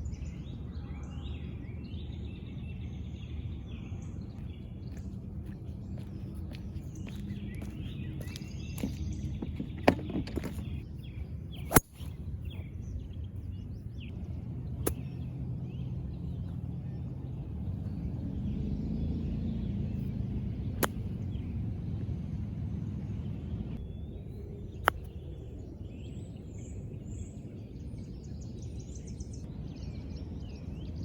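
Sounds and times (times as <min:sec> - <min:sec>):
birdsong: 0:00.0 - 0:31.0
low outdoor background: 0:00.0 - 0:31.0
golf clubs striking balls: 0:08.8 - 0:10.8, 0:11.6 - 0:12.2, 0:20.4 - 0:21.4.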